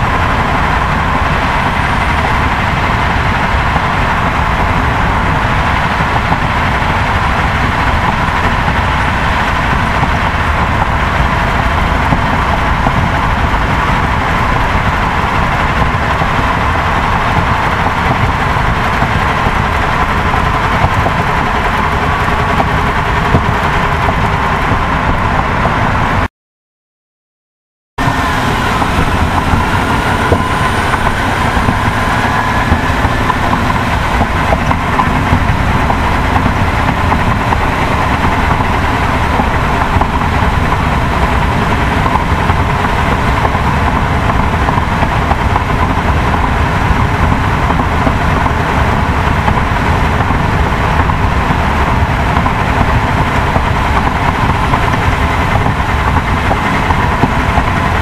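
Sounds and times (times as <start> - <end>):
vehicle engine running: 0.0 - 26.3, 28.0 - 58.0
faint rising whine: 28.0 - 40.1.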